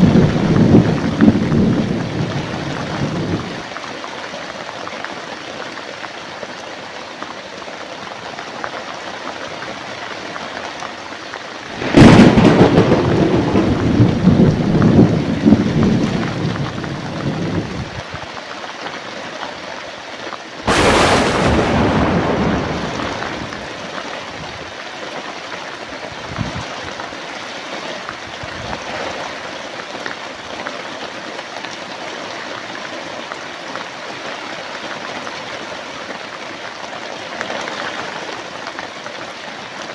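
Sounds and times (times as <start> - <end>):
thunder rumbling: 0.0 - 3.6, 11.8 - 18.0, 20.7 - 24.2
steady rain falling: 0.0 - 3.9, 10.9 - 18.1, 20.7 - 24.5.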